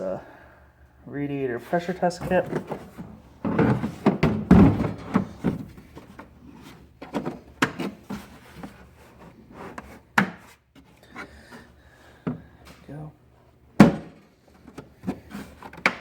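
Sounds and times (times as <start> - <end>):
tools clattering in drawer: 2.2 - 5.8.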